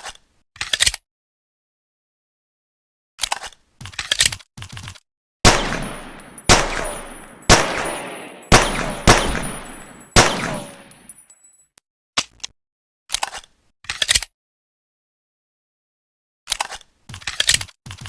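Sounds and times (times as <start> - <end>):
pistol shots echoing: 5.5 - 11.1.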